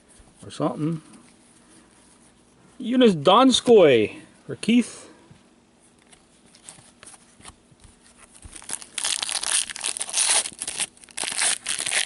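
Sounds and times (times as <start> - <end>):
wrapper tearing and crinkling: 8.4 - 12.0.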